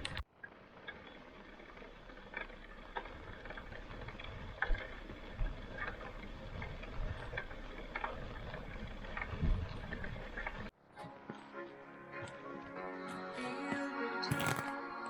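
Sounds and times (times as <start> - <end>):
footsteps crunching on forest floor: 4.7 - 14.8.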